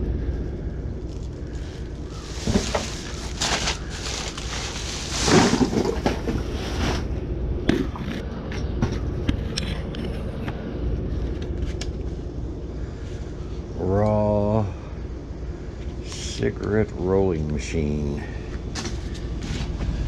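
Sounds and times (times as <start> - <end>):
steady low rumble: 0.0 - 20.0
rustling and scraping of junk: 1.1 - 12.2, 18.7 - 20.0.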